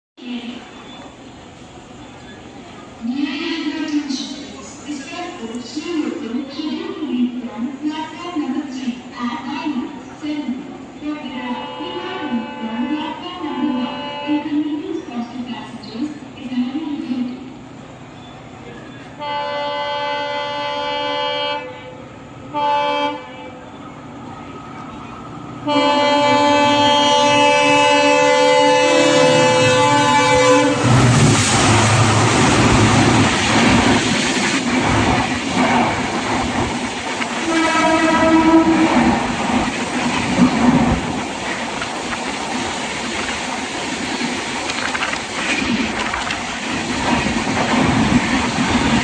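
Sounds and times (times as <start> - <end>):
locomotive horn blasts: 11.4 - 12.9, 13.5 - 14.5, 19.2 - 23.6, 25.6 - 30.9, 37.5 - 38.9
locomotive engine humming: 17.3 - 49.0
wheels clacking over rail joints: 30.8 - 49.0.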